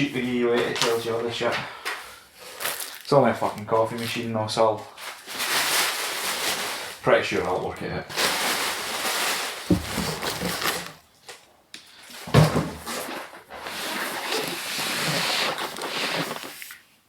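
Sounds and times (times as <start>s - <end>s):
cardboard and paper rustling: 8.1s - 11.4s, 12.1s - 16.8s
knock: 9.7s - 10.6s.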